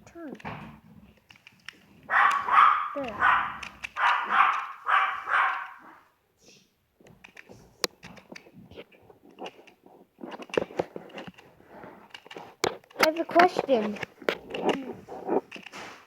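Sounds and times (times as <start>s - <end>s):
faint clicks and handling noises: 0.0s - 2.6s, 3.5s - 4.9s, 6.4s - 16.0s
dog barking: 2.1s - 6.2s.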